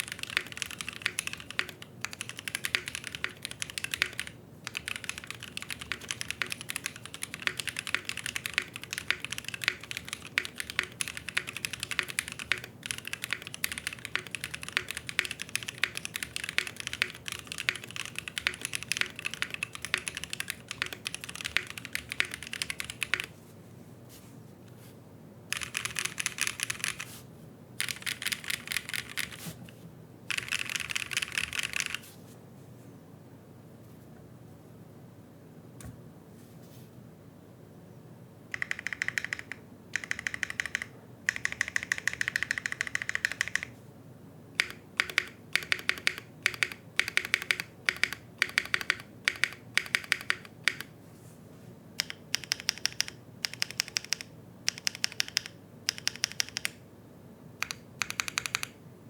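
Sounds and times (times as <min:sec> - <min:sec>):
typing on mechanical keyboard: 0:00.0 - 0:23.3, 0:25.5 - 0:27.1, 0:27.8 - 0:29.5, 0:30.3 - 0:32.0, 0:38.5 - 0:43.7, 0:44.6 - 0:50.9, 0:52.0 - 0:56.8, 0:57.6 - 0:58.8.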